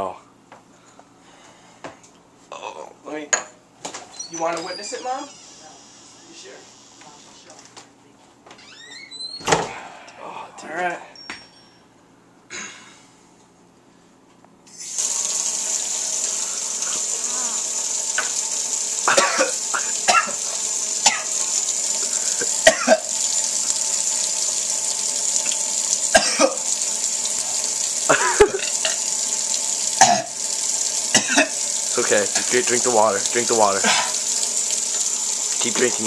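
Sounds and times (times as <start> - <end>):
person coughing: 12.5 - 13.0, 19.1 - 20.4, 21.1 - 21.3, 22.4 - 23.1, 26.1 - 26.6, 28.1 - 28.7, 30.0 - 30.3, 31.1 - 31.6, 33.8 - 34.2
sink tap running: 14.8 - 36.0.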